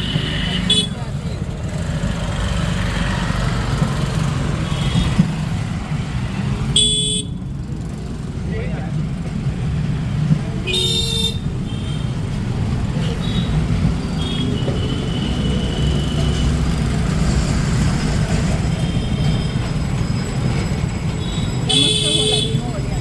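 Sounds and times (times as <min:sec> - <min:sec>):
vehicle horns honking: 0:00.0 - 0:01.1, 0:06.8 - 0:07.4, 0:10.6 - 0:12.2, 0:13.0 - 0:16.6, 0:21.2 - 0:22.8
traffic rumble: 0:00.0 - 0:23.0.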